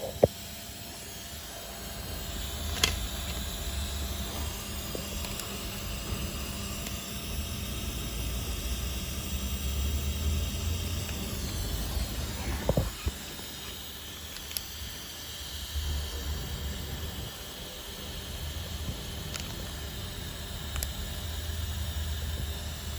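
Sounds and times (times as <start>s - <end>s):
air dryer compressor humming: 0.0s - 22.9s
air hissing: 9.1s - 18.0s.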